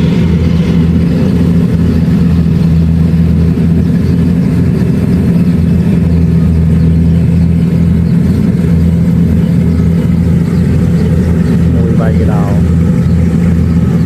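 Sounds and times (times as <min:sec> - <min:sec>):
combine harvester engine drone: 0:00.0 - 0:14.0.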